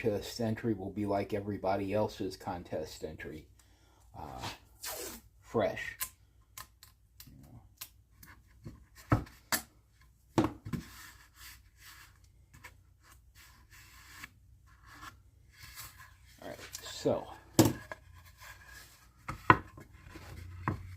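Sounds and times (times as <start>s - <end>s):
soft rubbing and scratching: 10.8s - 20.9s.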